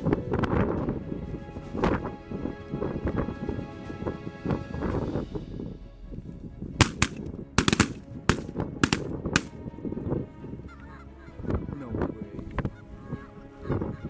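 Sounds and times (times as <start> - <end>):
shotgun shots: 6.8 - 9.5.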